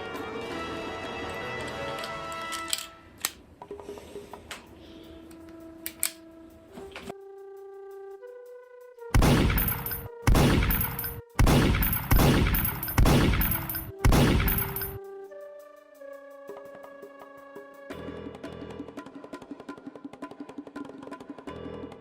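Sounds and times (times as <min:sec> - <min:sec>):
background music: 0:00.0 - 0:22.0
pistol gunshots: 0:09.2 - 0:15.0.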